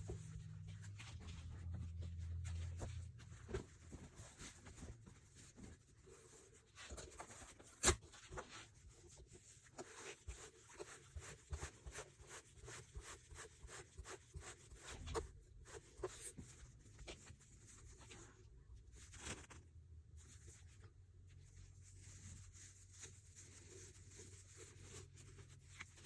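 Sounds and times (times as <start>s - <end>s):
fabric rustling: 0.0s - 10.2s.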